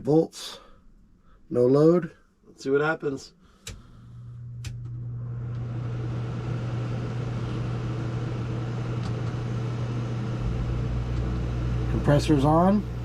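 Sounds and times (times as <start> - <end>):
air conditioner hum: 0.0 - 13.0
fan rushing air: 3.6 - 13.0
deeper hum: 3.8 - 13.0.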